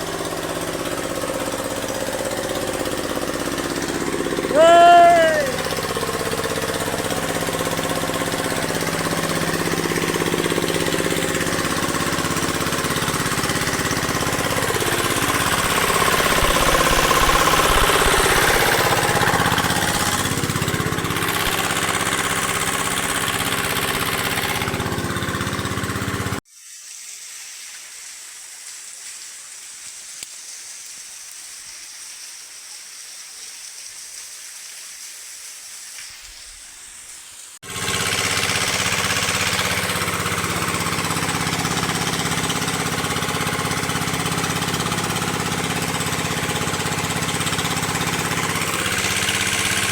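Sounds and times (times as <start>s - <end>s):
small engine running: 0.0s - 26.4s, 37.6s - 49.9s.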